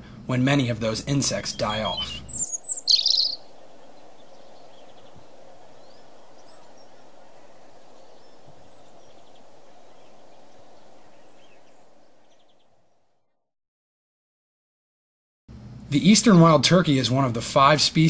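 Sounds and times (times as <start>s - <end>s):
low background noise: 0.0s - 13.2s
small birds chirping: 0.4s - 13.2s.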